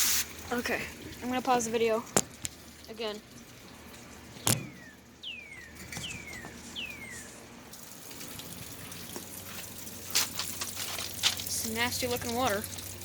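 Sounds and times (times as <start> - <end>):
running water hiss: 0.0 - 4.9
bird whistling descending notes: 4.6 - 7.4.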